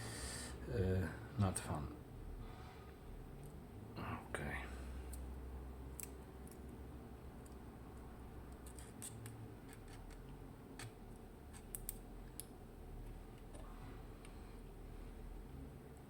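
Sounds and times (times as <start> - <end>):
small metallic clicks: 10.8 - 12.5.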